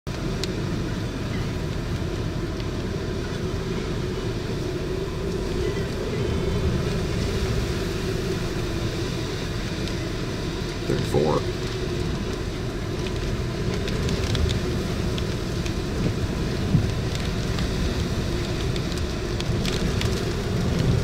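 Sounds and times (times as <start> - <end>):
low rumble: 0.1 - 21.0
strong wind blowing: 0.1 - 21.0.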